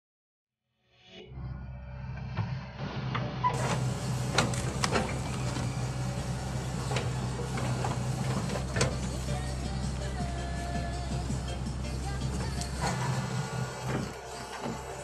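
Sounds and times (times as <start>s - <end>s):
excavator diesel engine running: 3.2s - 15.0s.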